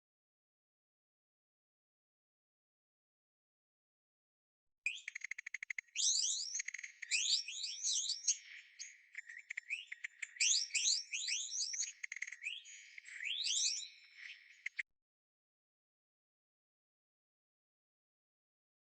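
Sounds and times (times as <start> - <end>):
bird trilling and chirping: 4.9 - 14.6.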